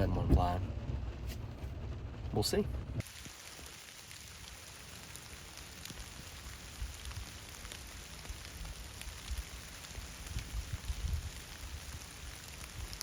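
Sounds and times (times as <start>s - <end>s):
steady rain patter: 0.0s - 13.0s
raindrops ticking: 3.0s - 13.0s.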